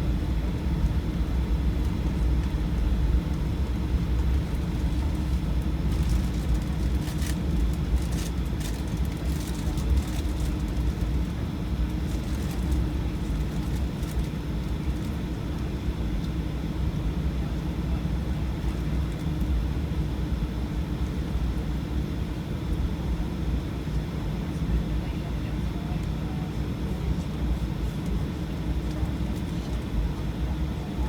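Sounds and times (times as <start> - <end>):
engine and airflow rumble: 0.0 - 31.0.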